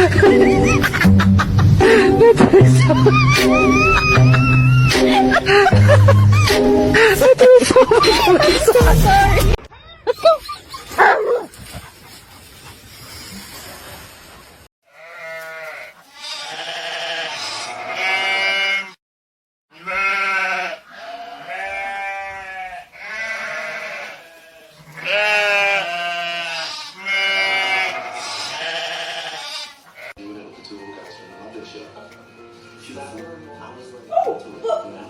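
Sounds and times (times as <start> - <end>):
animal bleating: 14.9 - 19.0, 19.7 - 30.2.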